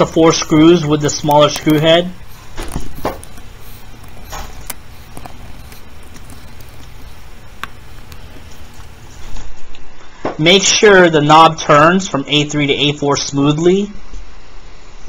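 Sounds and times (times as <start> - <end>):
steady low hum: 0.0 - 9.4.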